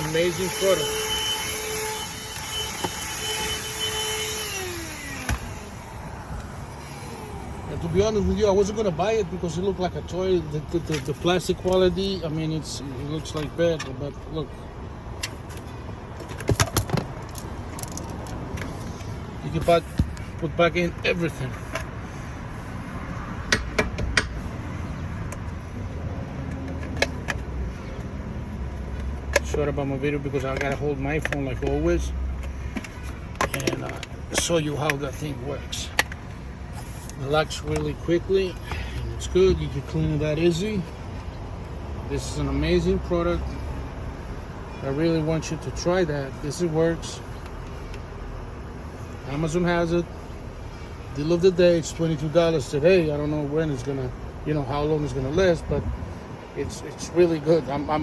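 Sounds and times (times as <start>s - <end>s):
handheld vacuum motor whine: 0.0s - 6.1s
plastic parts clicking and knocking: 32.4s - 35.0s.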